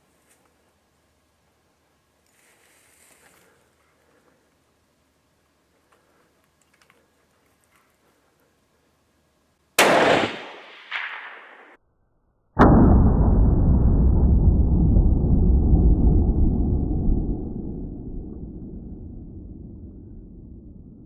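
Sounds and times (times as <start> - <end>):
rifle shot with echo: 9.8 - 11.8.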